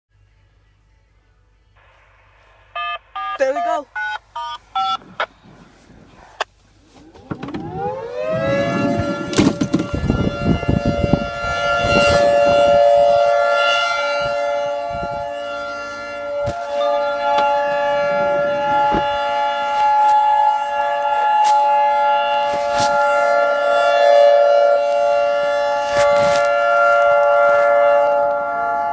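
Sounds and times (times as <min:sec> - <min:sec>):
warning siren winding up: 0:02.7 - 0:05.3, 0:06.8 - 0:28.9.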